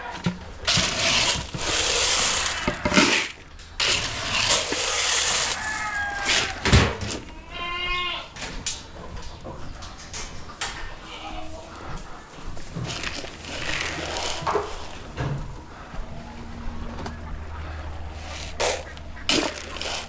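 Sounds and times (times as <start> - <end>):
rustling noise: 0.6 - 7.3, 8.4 - 16.9
goats bleating: 5.6 - 8.4, 11.0 - 11.8.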